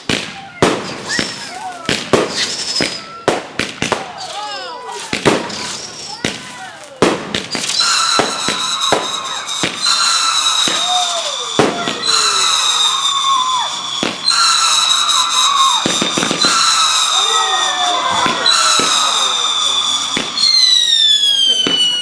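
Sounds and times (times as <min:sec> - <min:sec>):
fireworks bangs and pops: 0:00.0 - 0:22.0
high-pitched firework whistle: 0:00.7 - 0:06.8, 0:07.4 - 0:22.0
falling whistles: 0:00.9 - 0:03.2, 0:07.5 - 0:22.0.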